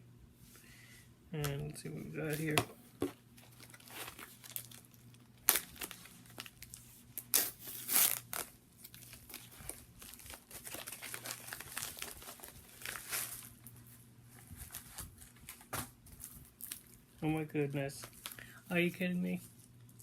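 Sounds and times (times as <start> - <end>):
packaging crinkling and tearing: 3.3 - 17.1.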